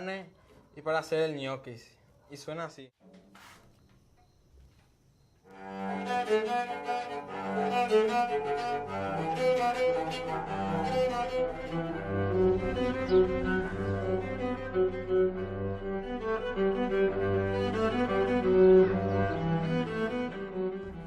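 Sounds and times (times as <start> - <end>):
bowed cello melody: 5.5 - 21.0.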